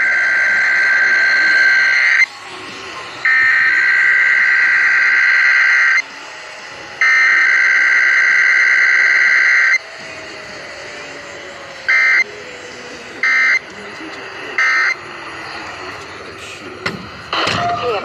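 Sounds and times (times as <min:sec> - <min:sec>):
warbling digital data squawk: 0:03.0 - 0:06.1.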